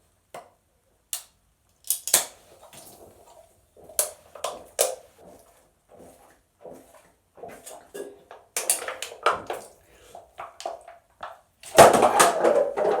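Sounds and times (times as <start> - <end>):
gulping and sloshing: 3.0 - 10.6.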